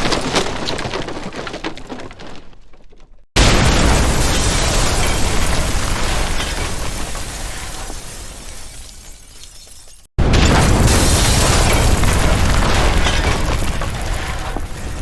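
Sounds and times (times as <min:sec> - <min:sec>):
explosion blast: 0:03.4 - 0:08.4, 0:10.2 - 0:15.0.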